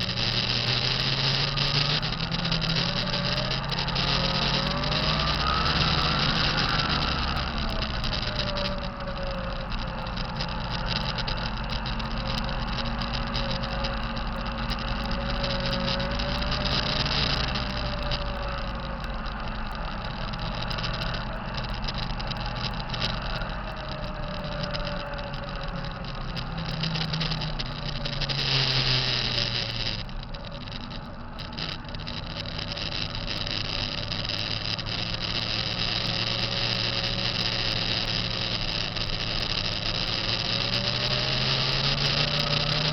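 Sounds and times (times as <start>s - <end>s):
diesel truck engine running: 0.0s - 41.0s
thin wavering whine: 0.0s - 42.9s.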